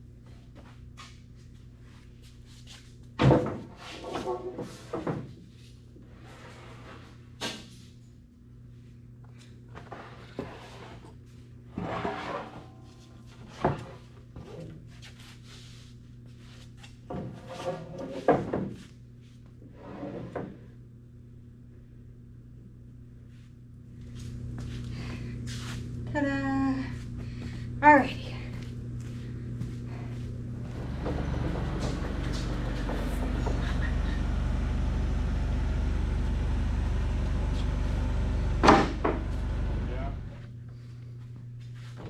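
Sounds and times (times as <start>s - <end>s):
steady low hum: 0.0s - 42.0s
objects knocking and clunking: 30.7s - 34.3s.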